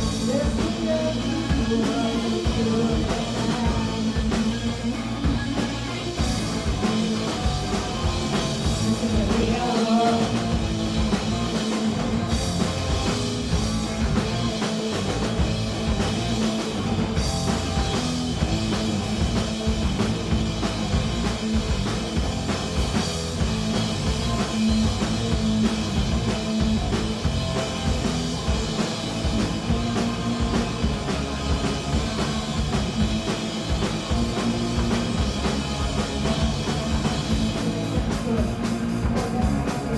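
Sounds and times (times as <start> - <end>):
person singing: 0.0 - 5.9, 7.0 - 11.0
punk rock band playing: 0.0 - 39.9.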